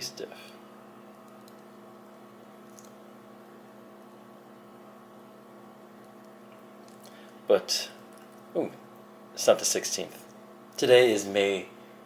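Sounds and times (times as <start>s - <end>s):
steady electrical hum: 0.0s - 12.0s.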